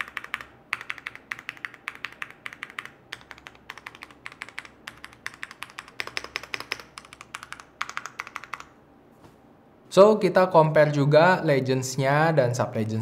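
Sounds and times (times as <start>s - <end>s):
mechanical keyboard typing: 0.0s - 8.7s.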